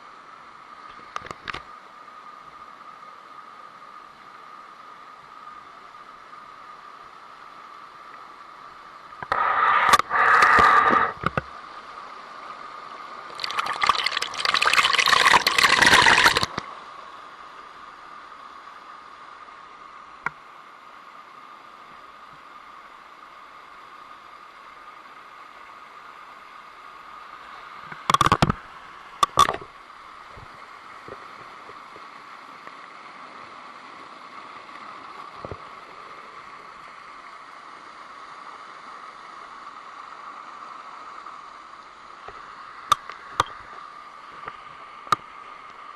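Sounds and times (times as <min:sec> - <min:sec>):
rushing water: 0:00.0 - 0:45.9
loud rough noise bursts: 0:09.2 - 0:11.2.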